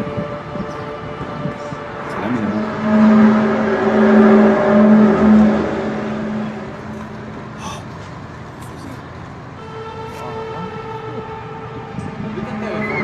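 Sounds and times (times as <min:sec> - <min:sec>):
low droning tone: 0:00.0 - 0:07.6.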